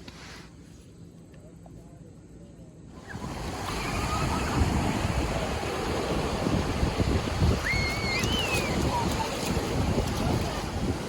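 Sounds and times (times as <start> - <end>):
ocean surf: 3.0 - 11.0
wind buffeting microphone: 3.1 - 11.0.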